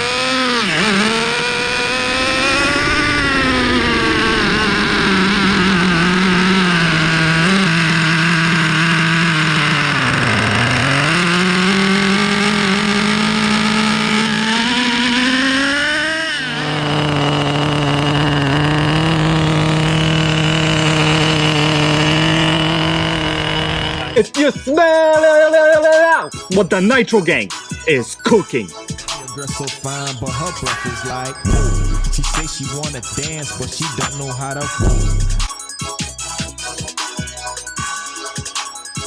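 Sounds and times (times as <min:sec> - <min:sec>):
model truck engine running: 0:00.0 - 0:24.6, 0:28.7 - 0:39.0.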